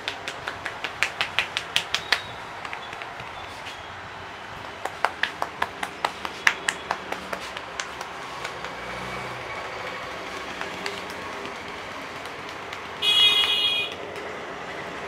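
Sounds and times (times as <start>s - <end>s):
hands tapping on a head: 0.0s - 3.3s, 4.8s - 8.9s, 10.6s - 13.0s
street traffic noise: 0.0s - 15.0s.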